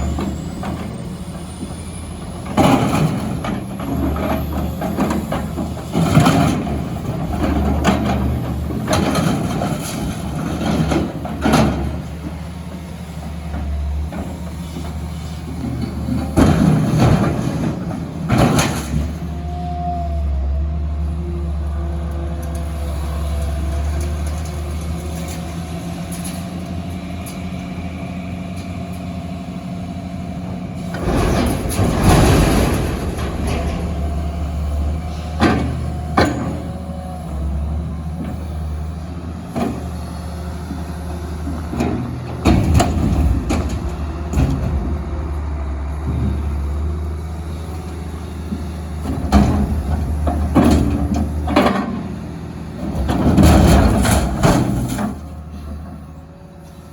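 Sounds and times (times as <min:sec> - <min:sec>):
diesel engine running: 0:00.0 - 0:56.9
metal banging and crunching: 0:02.4 - 0:12.5, 0:13.5 - 0:19.3, 0:30.8 - 0:36.9, 0:41.2 - 0:47.3, 0:48.4 - 0:52.2, 0:52.8 - 0:56.1.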